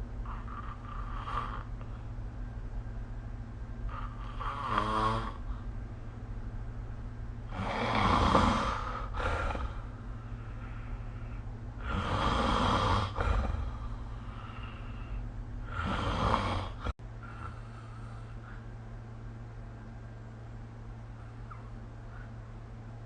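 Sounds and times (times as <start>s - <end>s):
steady low hum: 0.0s - 23.0s
person snoring: 0.2s - 1.9s, 3.9s - 5.6s, 7.5s - 18.6s.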